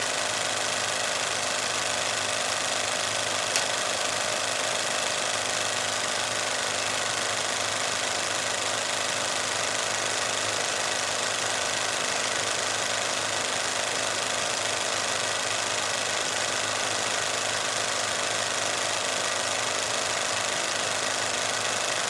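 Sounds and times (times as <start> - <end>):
film projector whirring: 0.0 - 22.0
projector sharp click: 3.5 - 4.0.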